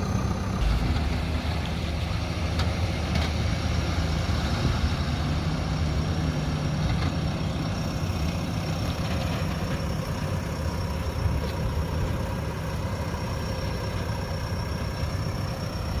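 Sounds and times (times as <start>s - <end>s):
diesel engine idling: 0.0s - 16.0s
high whine: 0.6s - 3.2s.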